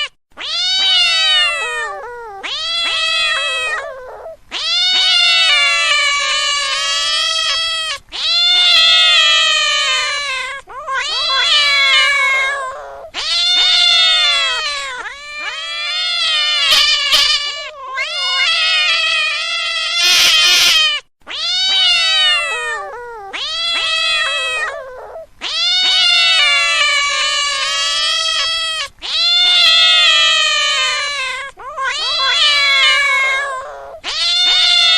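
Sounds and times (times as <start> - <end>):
cat meowing: 0.0 - 34.9.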